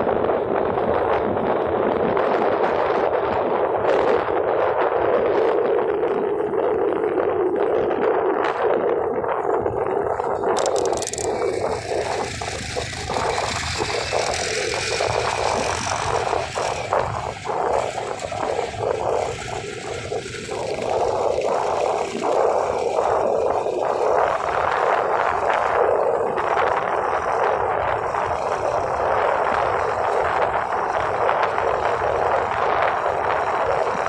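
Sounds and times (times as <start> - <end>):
vehicle road and engine noise: 0.0 - 34.0
small rattles and knocks: 10.6 - 11.6.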